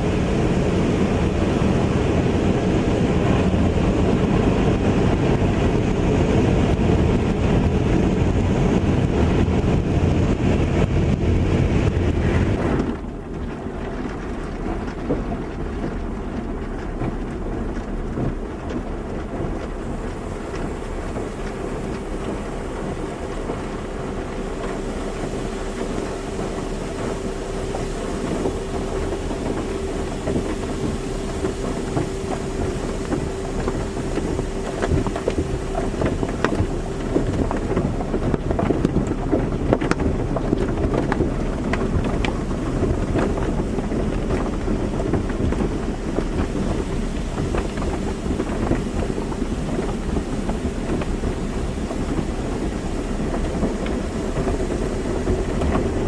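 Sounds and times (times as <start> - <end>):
steady motor hum: 0.0 - 56.0
water spray and machinery rushing: 0.0 - 56.0.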